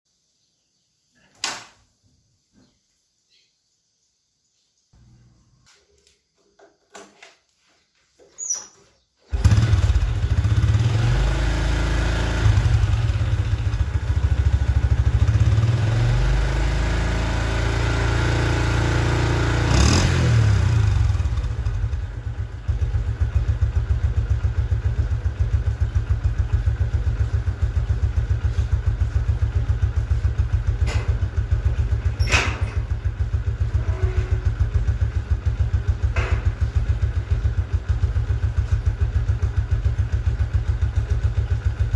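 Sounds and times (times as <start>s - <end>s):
old motorcycle engine: 9.3s - 41.9s.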